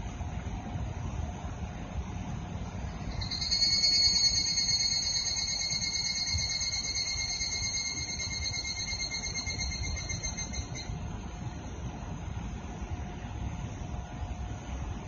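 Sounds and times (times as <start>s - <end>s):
cicada buzzing: 3.1s - 10.8s.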